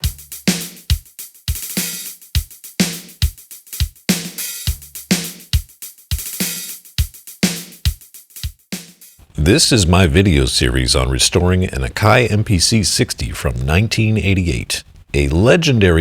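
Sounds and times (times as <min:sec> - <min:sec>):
drum beat: 0:00.0 - 0:09.7.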